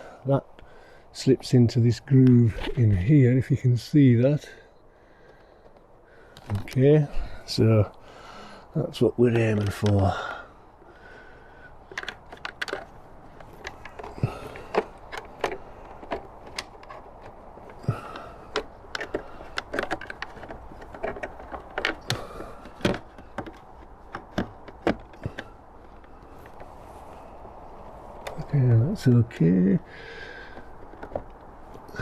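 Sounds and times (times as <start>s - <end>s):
plastic clicking against plastic: 9.3s - 10.1s, 11.8s - 26.7s, 30.4s - 31.9s.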